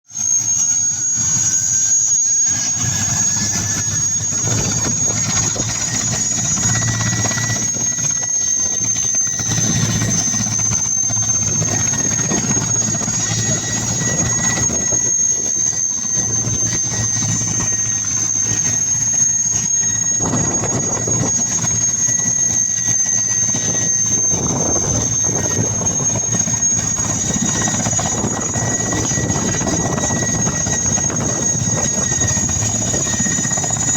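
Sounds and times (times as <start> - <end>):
helicopter rotor noise: 0.0 - 33.9
helicopter turbine whine: 0.1 - 33.9
lower whine rising in pitch: 0.1 - 33.9.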